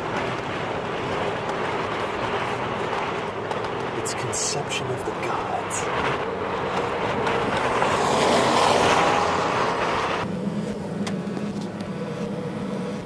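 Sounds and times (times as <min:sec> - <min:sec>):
loud rushing wind: 0:05.2 - 0:10.2.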